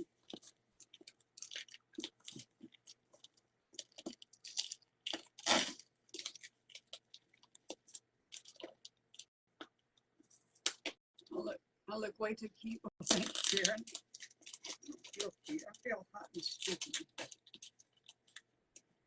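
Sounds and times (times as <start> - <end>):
packaging crinkling and crunching: 0.1 - 9.3, 13.0 - 15.8, 16.4 - 18.4.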